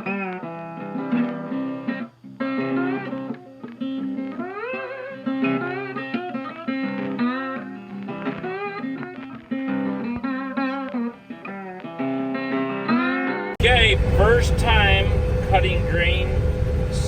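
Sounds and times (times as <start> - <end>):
guitar plucked notes with slides: 0.0 - 17.0
repeated low guitar note: 13.6 - 17.0.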